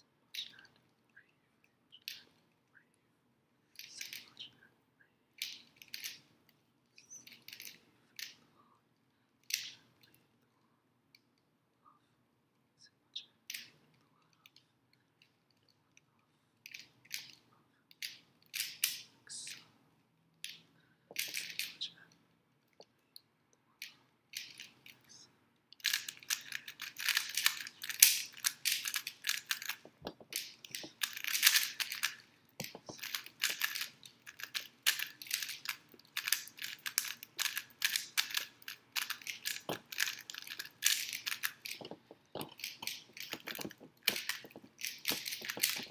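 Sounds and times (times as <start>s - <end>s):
puzzle cube clicking as turned: 17.9s - 19.6s, 21.2s - 21.8s, 25.8s - 45.9s.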